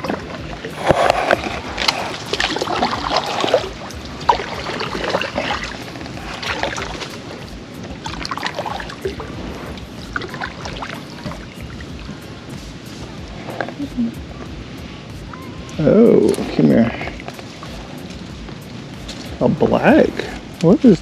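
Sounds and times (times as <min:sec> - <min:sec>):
kayak moving through water: 0:00.0 - 0:15.1, 0:16.3 - 0:20.5
knocks and scrapes: 0:00.7 - 0:03.7, 0:05.3 - 0:07.3.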